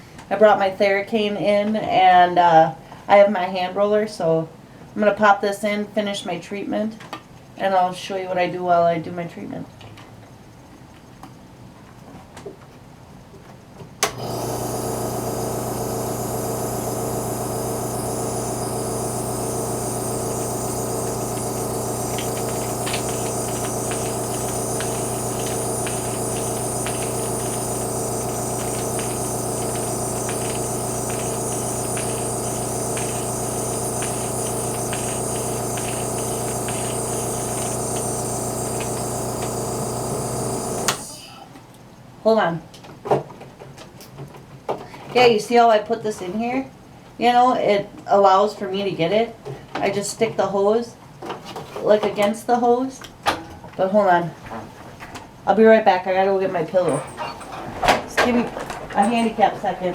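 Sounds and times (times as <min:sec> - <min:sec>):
air compressor humming: 0:14.0 - 0:41.4, 0:56.8 - 0:59.9.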